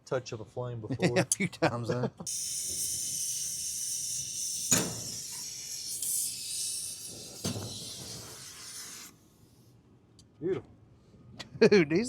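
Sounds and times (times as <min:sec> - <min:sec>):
torch flame hissing: 0:02.3 - 0:09.6.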